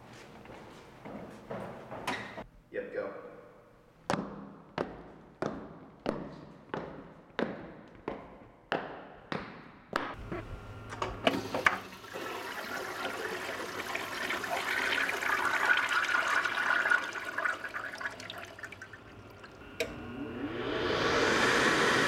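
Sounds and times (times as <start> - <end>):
water rushing and draining: 11.7 - 22.0.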